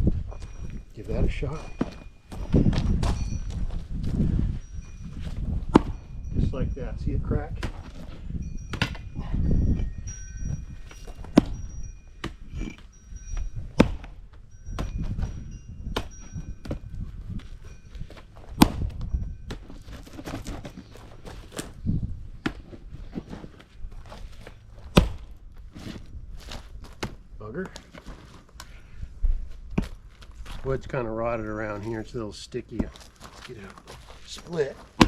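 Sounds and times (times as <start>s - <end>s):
axe striking wood: 5.7s - 6.0s, 7.6s - 8.0s, 8.7s - 9.1s, 11.0s - 11.6s, 13.7s - 14.2s, 15.9s - 16.8s, 18.6s - 20.7s, 24.9s - 25.9s
footsteps: 32.7s - 35.0s.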